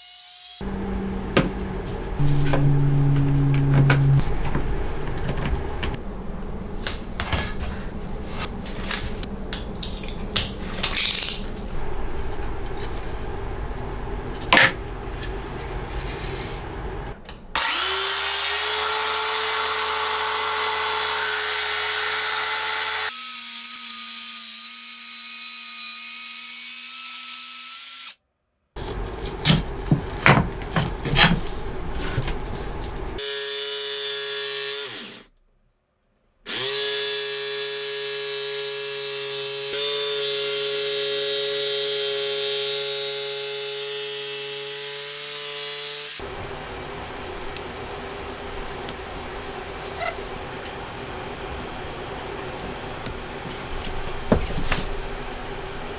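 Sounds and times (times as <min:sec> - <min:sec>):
power tool motor whine: 0:00.6 - 0:06.8, 0:17.5 - 0:23.1.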